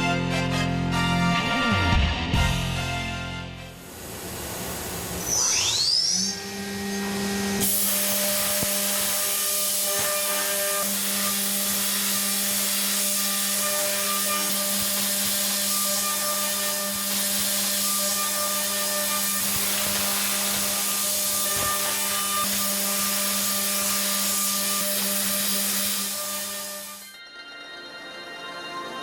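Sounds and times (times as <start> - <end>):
spindle whine: 1.4 - 7.7.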